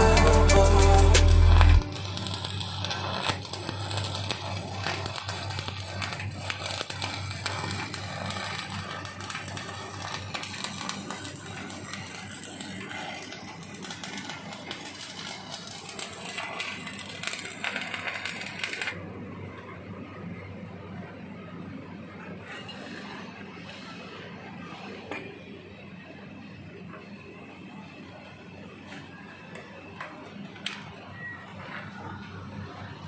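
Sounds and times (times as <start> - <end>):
steady low hum: 0.0 - 3.1.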